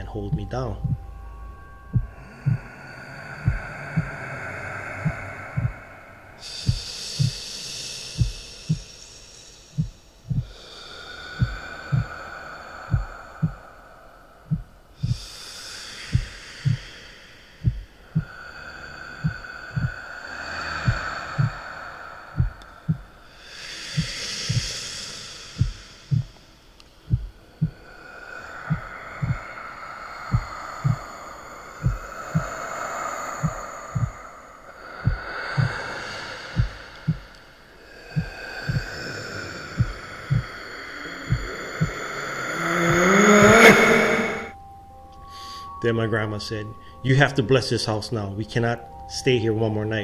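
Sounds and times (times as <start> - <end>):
heartbeat double thumps: 0.0 - 2.8, 3.4 - 4.2, 5.0 - 5.8, 6.4 - 9.0, 9.7 - 10.7, 11.4 - 12.2, 12.9 - 13.6, 14.4 - 15.4, 16.1 - 16.9, 17.6 - 18.4, 19.2 - 20.0, 20.8 - 21.6, 22.4 - 23.2, 23.9 - 24.9, 25.6 - 26.4, 27.0 - 27.8, 28.7 - 29.4, 30.3 - 31.1, 31.8 - 32.6, 33.4 - 34.2, 35.0 - 40.6, 41.2 - 44.5
airy hissing tones: 0.0 - 50.0.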